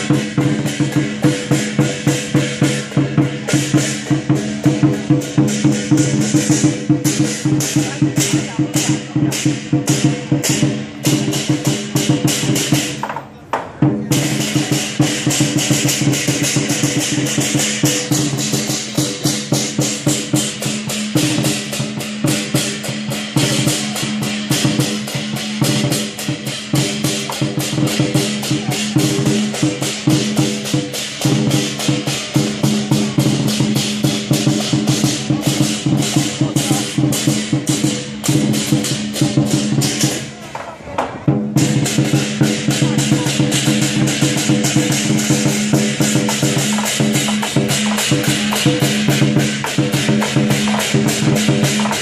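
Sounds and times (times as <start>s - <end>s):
cymbals crashing: 0.0s - 13.0s, 14.0s - 40.5s, 41.3s - 52.0s
drum beating: 0.0s - 52.0s.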